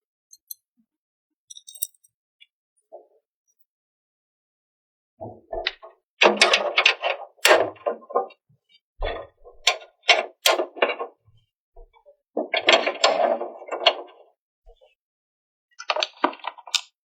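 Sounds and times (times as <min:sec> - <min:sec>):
clicks and knocks of toy pieces: 0:15.8 - 0:17.0.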